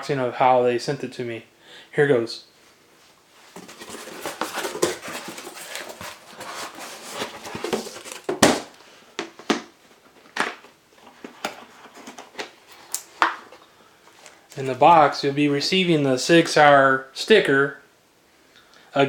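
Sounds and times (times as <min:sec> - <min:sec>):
cardboard box rustling and scraping: 0:03.5 - 0:08.4.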